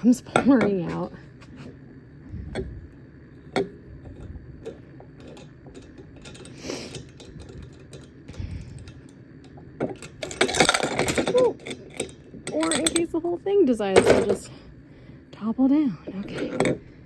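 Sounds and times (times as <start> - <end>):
machine parts clicking and knocking: 3.6 - 13.2.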